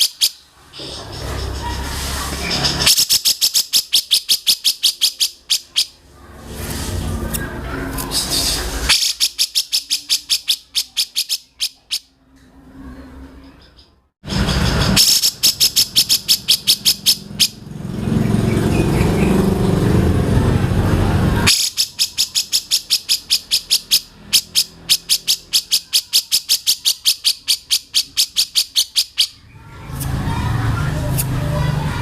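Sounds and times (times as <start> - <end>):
rapid repeated bird calls: 0.0 - 6.0, 8.0 - 12.1, 13.4 - 19.6, 21.5 - 30.1.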